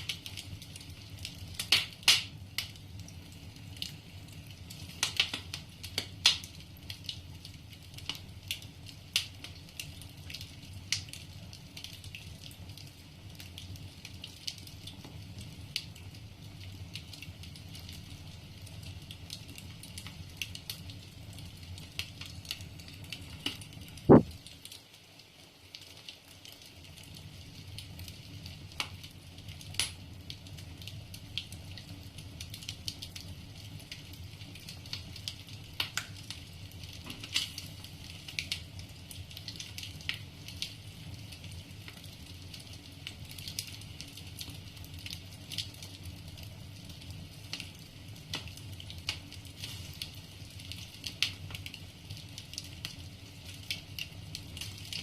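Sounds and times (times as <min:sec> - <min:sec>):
logs crackling in fire: 0:00.0 - 0:55.0
low fire rumble: 0:00.0 - 0:55.0
loud knock: 0:24.1 - 0:24.3.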